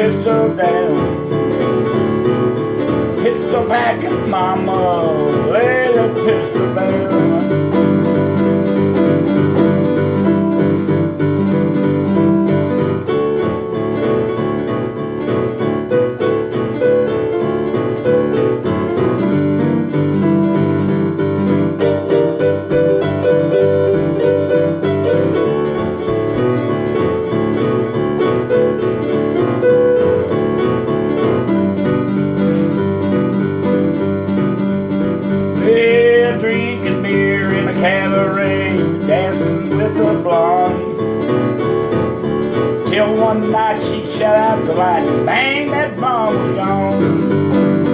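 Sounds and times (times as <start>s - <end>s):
country band accompaniment: 0.0s - 47.9s
piano playing melody: 0.0s - 47.9s.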